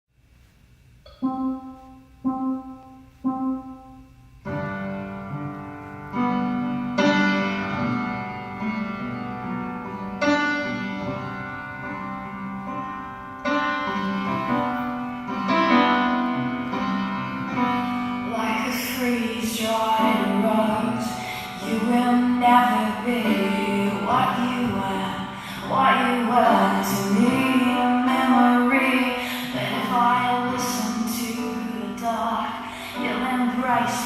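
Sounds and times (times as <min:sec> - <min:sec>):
piano notes and chords: 0:01.0 - 0:34.0.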